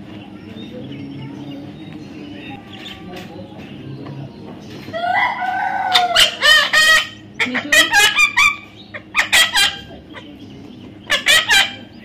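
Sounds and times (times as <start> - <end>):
parrot squawking: 5.0 - 10.4, 11.0 - 12.0.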